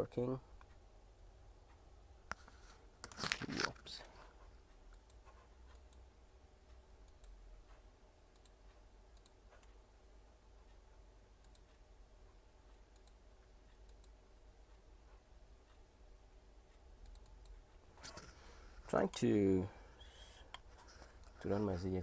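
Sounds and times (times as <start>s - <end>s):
low steady hum: 0.0s - 22.0s
computer mouse clicks: 4.9s - 6.0s, 7.0s - 7.4s, 8.3s - 9.8s, 11.4s - 11.8s, 12.9s - 13.2s, 13.8s - 14.2s, 17.0s - 18.4s.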